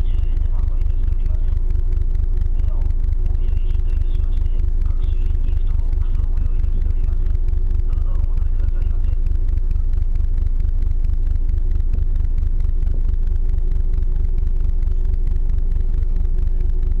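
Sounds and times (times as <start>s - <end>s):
ship engine rumbling: 0.0s - 17.0s.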